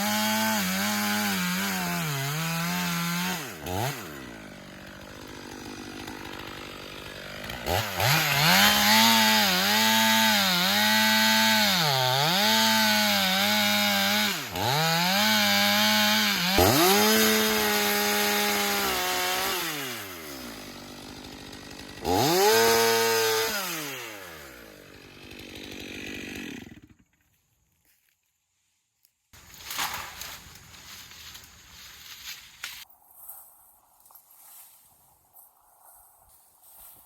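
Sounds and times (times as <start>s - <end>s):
pole saw cutting branches: 0.0s - 27.2s.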